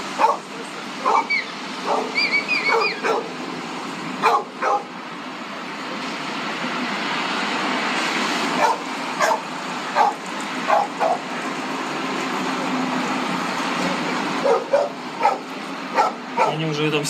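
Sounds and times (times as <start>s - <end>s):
traffic noise: 0.0s - 17.0s
dog barking and yelping: 0.1s - 3.4s, 4.2s - 5.0s, 8.5s - 11.3s, 14.4s - 16.6s.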